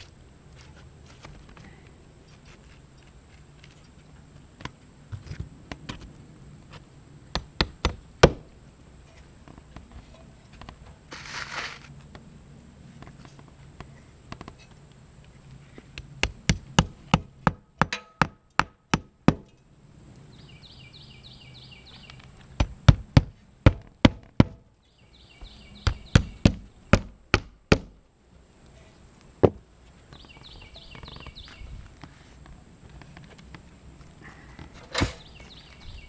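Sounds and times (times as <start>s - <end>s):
high chirping trills: 24.8s - 26.9s, 30.0s - 31.8s.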